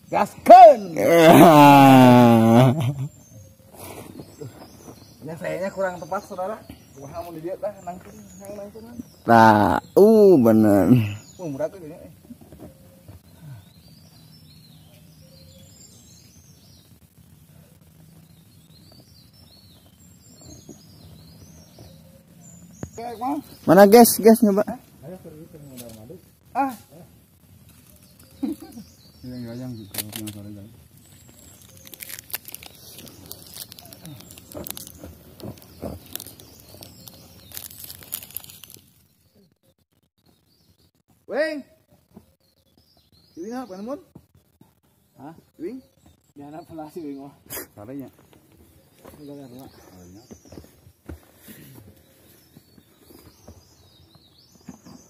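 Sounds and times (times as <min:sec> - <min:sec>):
birds chirping: 0:00.0 - 0:55.0
crackling and rustling clicks: 0:31.0 - 0:39.0.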